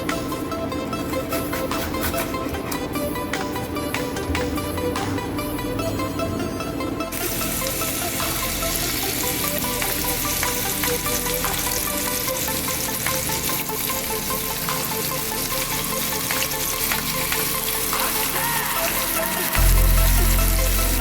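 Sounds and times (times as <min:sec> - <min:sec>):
chicken frying sizzle: 0:07.1 - 0:21.0.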